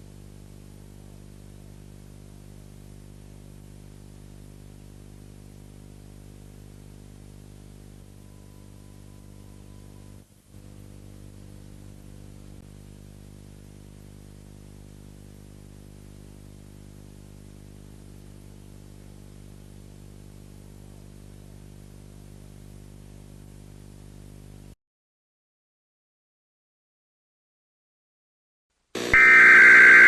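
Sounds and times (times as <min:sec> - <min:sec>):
low electronic hum: 0:05.4 - 0:21.4, 0:29.0 - 0:30.0
static hiss: 0:07.7 - 0:19.6, 0:28.9 - 0:30.0
faint high tone: 0:08.2 - 0:10.2, 0:29.2 - 0:30.0.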